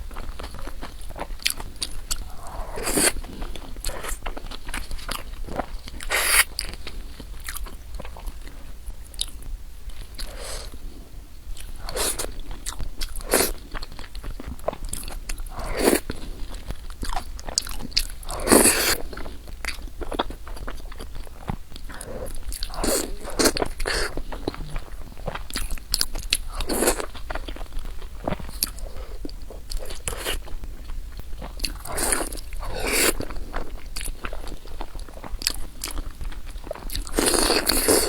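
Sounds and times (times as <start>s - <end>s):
person chewing food: 0.0s - 38.0s
crunches while eating: 36.7s - 38.0s.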